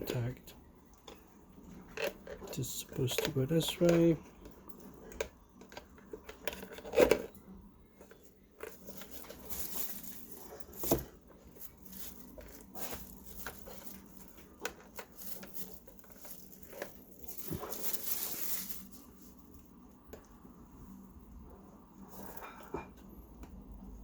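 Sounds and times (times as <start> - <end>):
rustling: 1.1 - 19.8, 22.0 - 22.9
plastic and metal parts clicking: 1.9 - 7.4.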